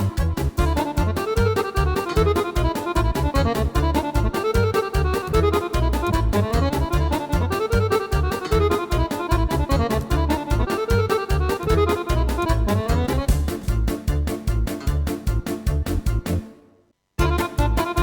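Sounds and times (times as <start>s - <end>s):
keyboard style demo with drums and bass: 0.0s - 18.0s.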